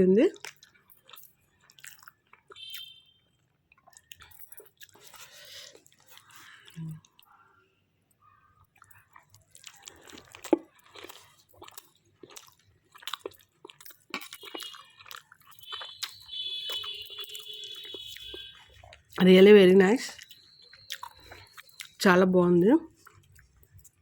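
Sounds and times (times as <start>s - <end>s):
person chewing food: 0.4s - 7.5s, 8.1s - 19.2s, 20.1s - 22.0s, 22.9s - 24.0s
mouth smacks and clicks: 20.2s - 22.0s.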